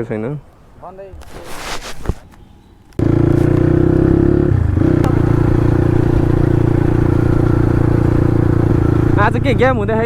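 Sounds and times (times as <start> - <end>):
motorcycle engine idling: 3.0 - 10.0.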